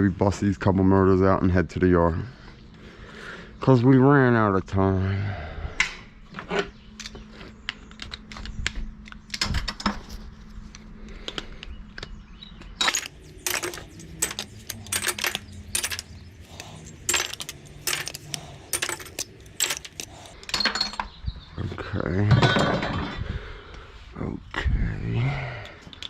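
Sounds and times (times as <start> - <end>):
scrap metal clinking: 12.8 - 21.1.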